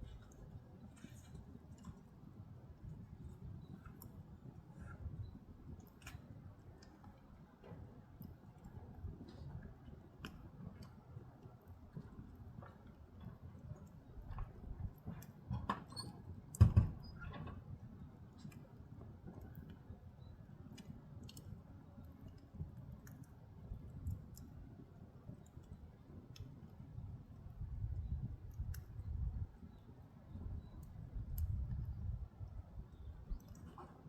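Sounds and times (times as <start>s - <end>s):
fire crackles: 0.0s - 34.0s
firewood burning rumble: 0.0s - 34.0s.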